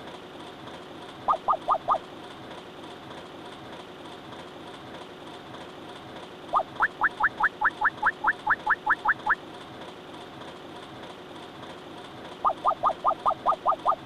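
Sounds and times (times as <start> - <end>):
cartoon rising chirps: 6.6 - 9.4.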